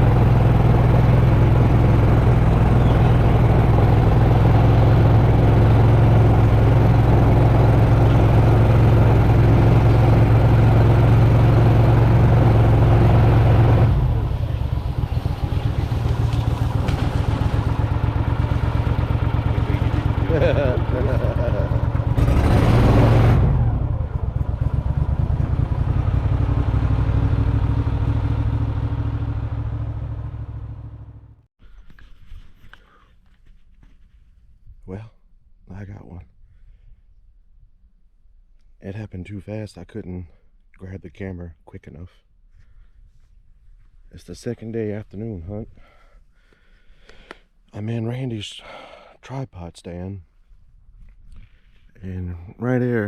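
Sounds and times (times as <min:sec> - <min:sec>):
engine humming steadily: 0:00.0 - 0:32.0.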